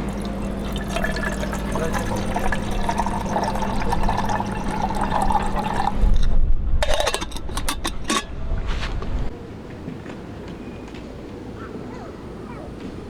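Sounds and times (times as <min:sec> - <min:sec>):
liquid pouring into container: 0:00.0 - 0:06.3.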